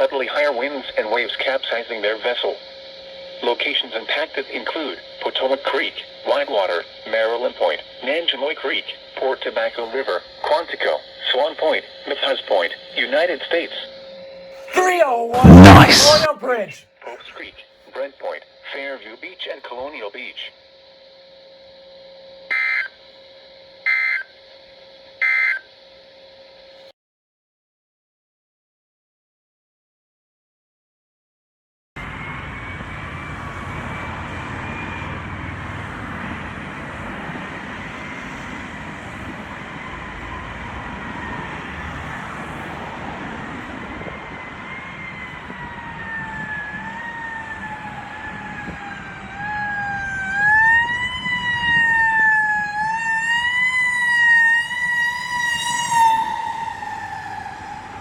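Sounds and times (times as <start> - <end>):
emergency vehicle siren: 10.8 - 16.5, 22.5 - 23.0, 23.8 - 24.3, 25.2 - 25.6, 32.0 - 58.0.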